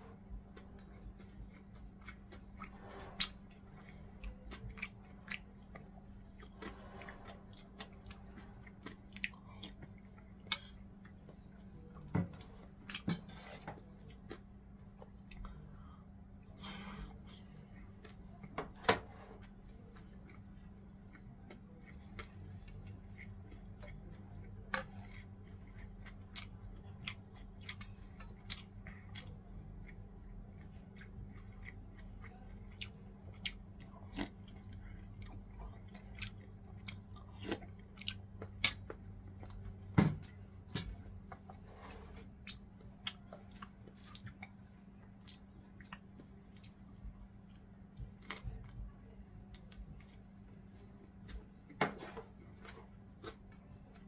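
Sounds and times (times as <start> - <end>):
person chewing food: 0.0 - 54.0.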